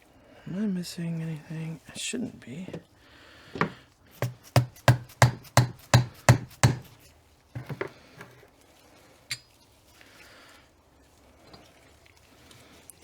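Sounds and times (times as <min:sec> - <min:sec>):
sharp hammer taps on metal: 0:03.6 - 0:07.0, 0:07.6 - 0:08.3.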